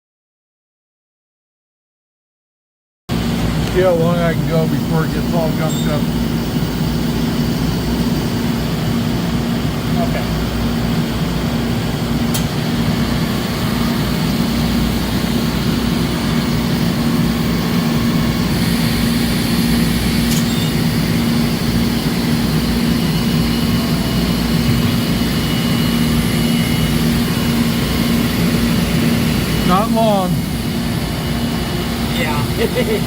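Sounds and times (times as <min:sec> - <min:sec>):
lathe running hum: 0:03.1 - 0:33.0
faint thin high whine: 0:05.6 - 0:06.1.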